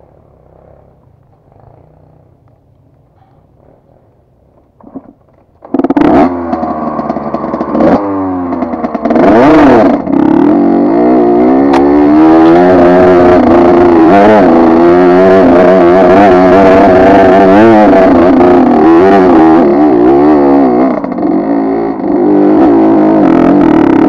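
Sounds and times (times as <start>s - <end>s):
dirt bike engine revving: 3.1s - 24.0s.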